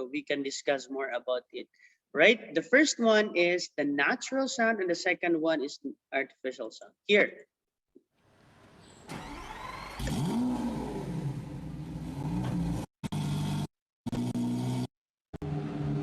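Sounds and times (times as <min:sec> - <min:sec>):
sports car engine revving: 0:09.3 - 0:16.0.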